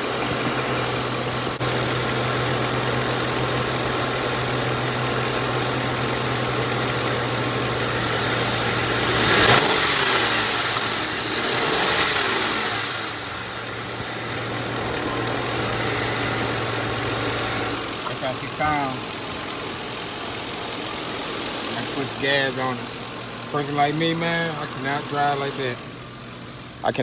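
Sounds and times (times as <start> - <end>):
car engine idling and revving: 0.0 - 27.0
high-pitched belt pulley squeal: 8.0 - 14.1.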